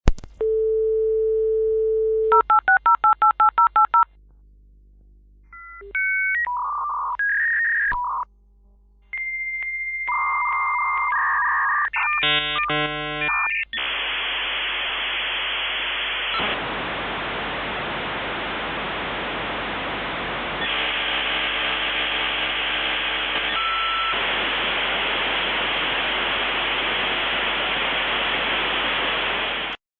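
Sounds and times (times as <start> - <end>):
dial tone: 0.4 - 4.1, 5.5 - 8.3, 9.1 - 13.7, 23.5 - 24.2
touch-tone dialing beeps: 0.4 - 4.1, 23.5 - 24.1
modem data noise hiss: 9.1 - 29.8
modem handshake beeps and chirps: 23.4 - 24.2.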